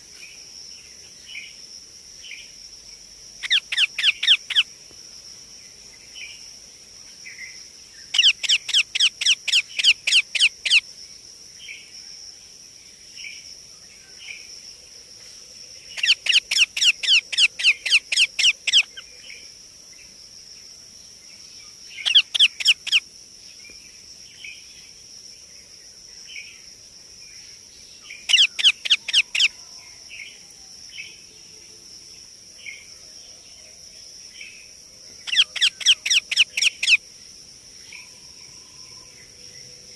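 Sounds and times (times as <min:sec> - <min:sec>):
parakeet harsh calls: 0:03.4 - 0:04.7, 0:08.1 - 0:10.8, 0:16.0 - 0:19.0, 0:22.0 - 0:23.0, 0:28.3 - 0:29.5, 0:35.2 - 0:37.0
parakeet soft chirps: 0:03.4 - 0:04.7, 0:08.1 - 0:10.8, 0:16.0 - 0:19.1, 0:22.0 - 0:23.0, 0:28.2 - 0:29.5, 0:35.2 - 0:37.0.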